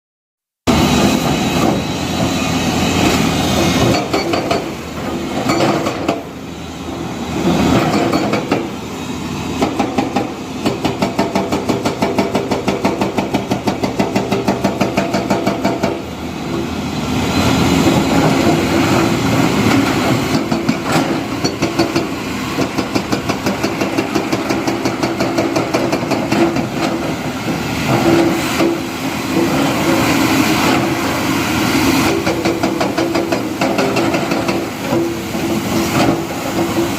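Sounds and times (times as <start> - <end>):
diesel construction machinery engine: 0.7 - 36.9.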